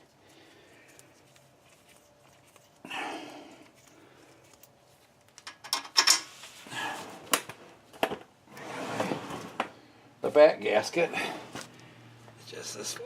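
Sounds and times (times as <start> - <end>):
soft rustling: 0.0 - 2.8
clicks and knocks of parts: 4.5 - 6.3.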